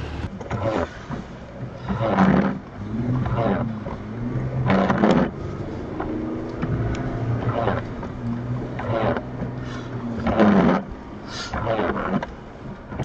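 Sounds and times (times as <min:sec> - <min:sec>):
engine idling: 0:00.0 - 0:00.3
short noisy bursts: 0:00.0 - 0:00.3.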